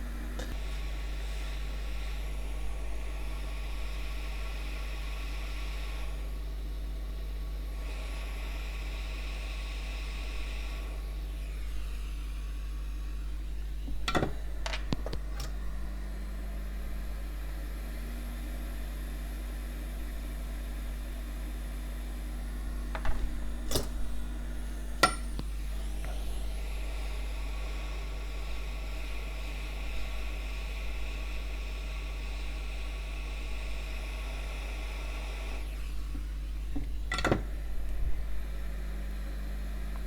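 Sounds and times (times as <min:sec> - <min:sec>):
electrical hum and hiss: 0:00.0 - 0:40.0
metal tools clicking on workbench: 0:25.0 - 0:25.4.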